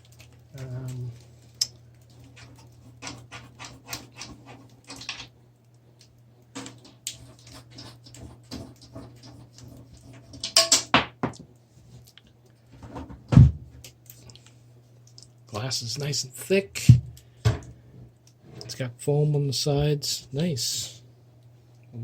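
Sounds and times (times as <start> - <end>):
steady low hum: 11.4 - 22.0.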